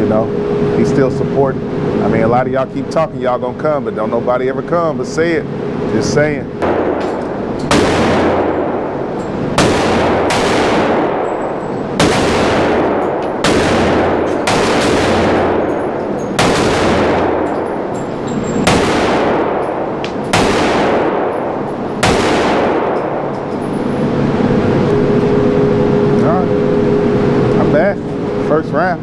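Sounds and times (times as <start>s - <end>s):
gunshots with echo: 6.6s - 26.1s.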